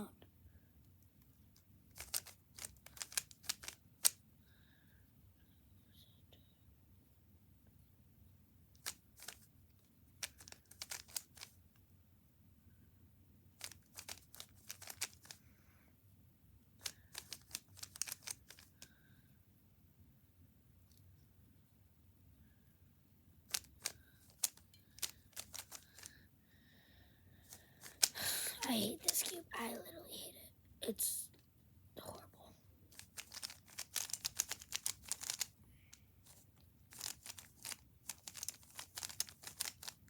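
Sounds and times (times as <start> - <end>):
puzzle cube plastic clicks: 0.9 - 4.2, 8.7 - 11.6, 13.6 - 15.4, 16.8 - 19.0, 23.4 - 26.2, 27.5 - 29.5, 32.9 - 40.0.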